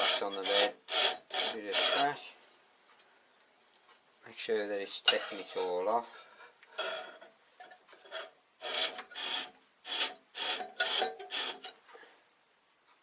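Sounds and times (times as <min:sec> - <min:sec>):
chisel rasping on abrasive: 0:00.0 - 0:02.2, 0:05.0 - 0:07.3, 0:08.0 - 0:11.8.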